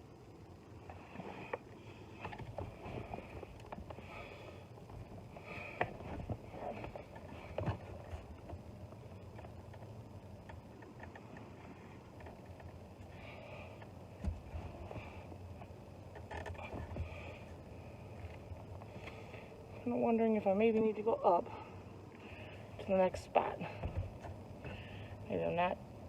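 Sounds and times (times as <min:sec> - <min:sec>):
wire strippers clicking and scraping: 0:16.1 - 0:16.9.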